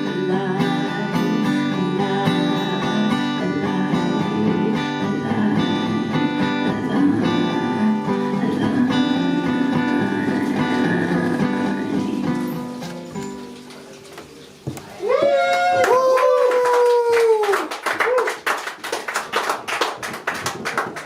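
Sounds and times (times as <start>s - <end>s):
acoustic guitar strumming: 0.0s - 14.6s.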